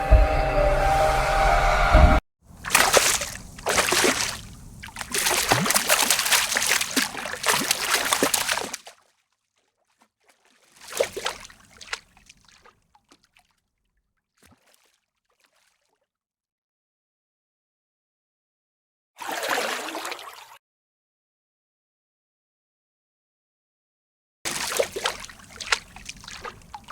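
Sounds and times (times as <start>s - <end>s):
water dripping: 2.5s - 9.0s, 10.3s - 13.5s, 24.5s - 26.9s
water sloshing and splashing: 2.5s - 16.0s, 24.5s - 26.9s.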